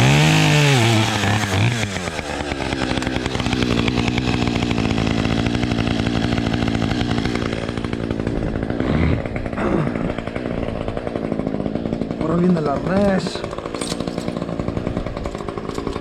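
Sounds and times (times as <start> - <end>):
chainsaw throttle blip: 0.0 - 12.2, 12.8 - 16.0
chainsaw idling: 0.0 - 16.0.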